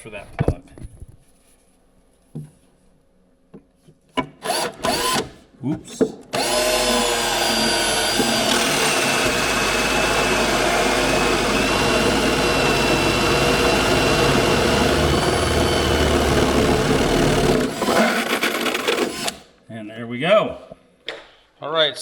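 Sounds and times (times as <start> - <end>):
power drill cutting wood: 4.4 - 5.4, 6.3 - 19.5.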